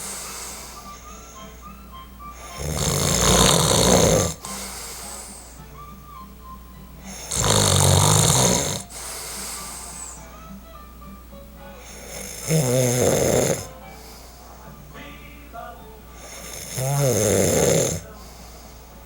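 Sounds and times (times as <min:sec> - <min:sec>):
man snoring: 0:00.0 - 0:01.7, 0:02.4 - 0:05.7, 0:07.0 - 0:10.4, 0:11.8 - 0:14.8, 0:16.1 - 0:19.0.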